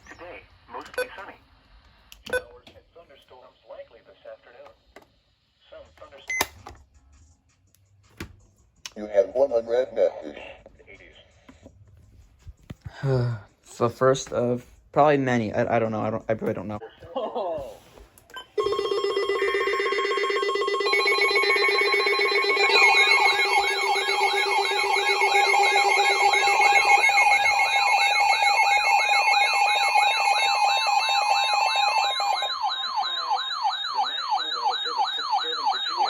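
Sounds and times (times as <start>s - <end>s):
steady alert tones: 18.4s - 36.0s
warbling siren-like alarms: 18.4s - 36.0s
digital data chirps: 20.9s - 36.0s.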